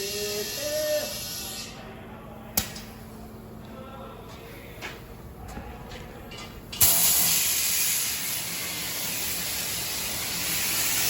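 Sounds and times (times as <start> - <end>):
compressed air hissing: 0.0 - 1.8, 6.8 - 11.0.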